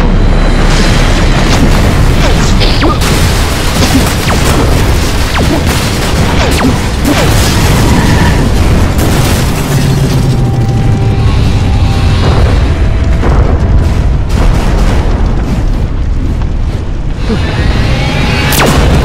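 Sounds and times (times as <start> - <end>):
booms and explosions: 0.0 - 19.0
music: 10.3 - 15.3.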